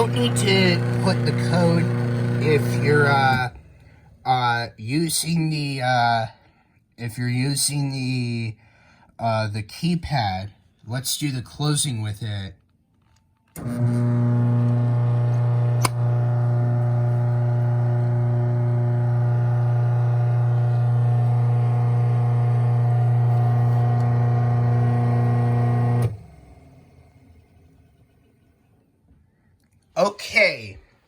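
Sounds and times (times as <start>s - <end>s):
garage door opener motor hum: 0.0s - 4.1s, 13.6s - 28.5s
garage door opener click: 13.5s - 27.1s.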